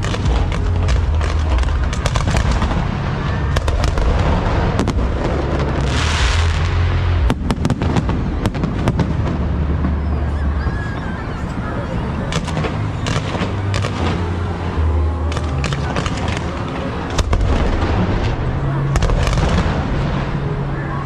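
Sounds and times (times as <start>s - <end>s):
hissing crackle burst: 0.0s - 10.2s
fireworks bangs and booms: 0.0s - 20.9s
deep continuous rumble: 0.0s - 21.0s.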